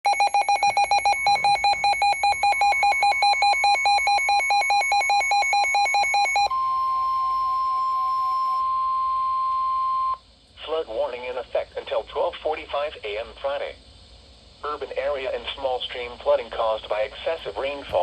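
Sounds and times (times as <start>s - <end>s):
rapid electronic alarm beeping: 0.1s - 9.1s
steady warning alarm tone: 0.1s - 10.2s.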